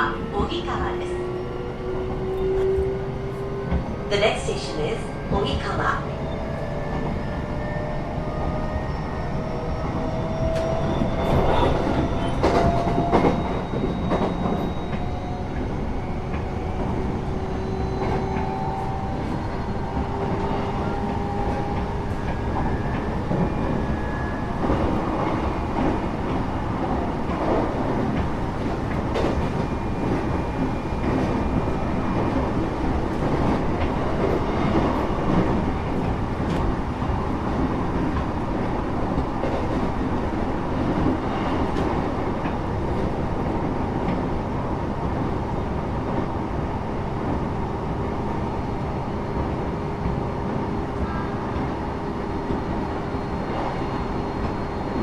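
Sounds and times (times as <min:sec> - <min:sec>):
train wheels rumbling on rails: 0:00.0 - 0:55.0
faint train whine: 0:47.9 - 0:55.0.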